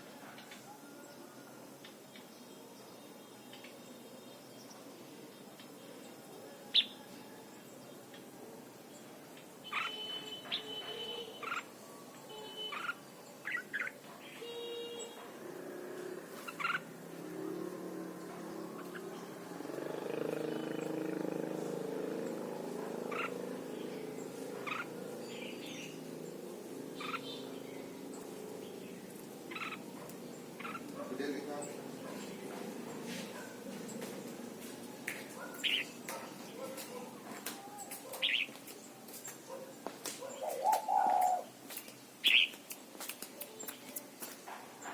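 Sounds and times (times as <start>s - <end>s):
bird chirps: 9.6s - 15.3s, 16.4s - 16.9s, 22.8s - 26.1s, 27.0s - 34.4s, 35.3s - 39.6s, 40.2s - 42.7s.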